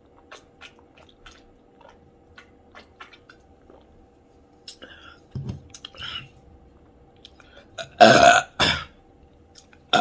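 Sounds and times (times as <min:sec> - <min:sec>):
loud human burps: 0:07.8 - 0:08.9.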